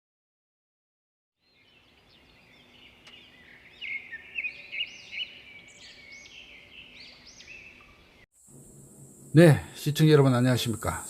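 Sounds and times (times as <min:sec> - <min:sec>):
birds chirping: 0:01.4 - 0:11.0.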